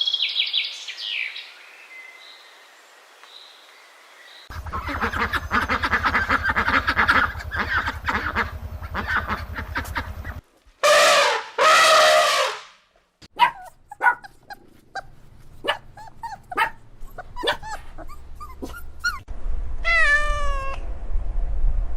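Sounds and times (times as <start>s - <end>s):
dog yipping and whimpering: 13.4s - 19.3s
cat meowing: 19.8s - 20.8s.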